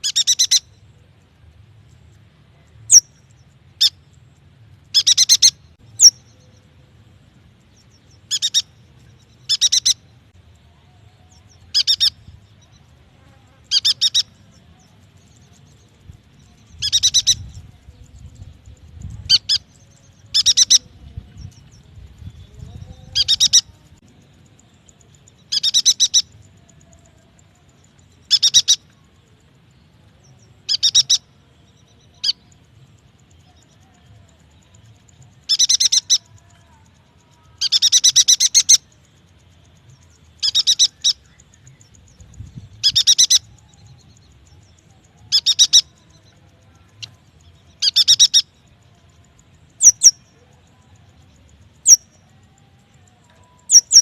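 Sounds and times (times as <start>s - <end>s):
bird chattering calls: 0.0s - 0.7s, 4.9s - 6.2s, 8.3s - 8.7s, 9.5s - 10.0s, 11.7s - 12.2s, 13.7s - 14.4s, 16.7s - 17.5s, 19.2s - 20.9s, 22.7s - 23.7s, 25.5s - 26.4s, 28.3s - 28.8s, 30.7s - 31.3s, 35.4s - 36.3s, 37.6s - 38.9s, 40.4s - 41.9s, 42.8s - 43.6s, 45.3s - 46.0s, 47.7s - 48.5s, 49.8s - 50.2s, 53.7s - 54.0s.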